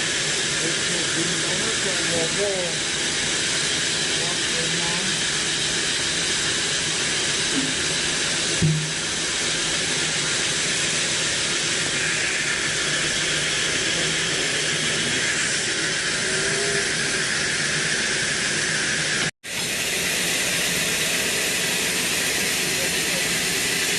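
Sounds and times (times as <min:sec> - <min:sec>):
band saw cutting log: 0:00.0 - 0:23.9
short knock: 0:08.6 - 0:09.0.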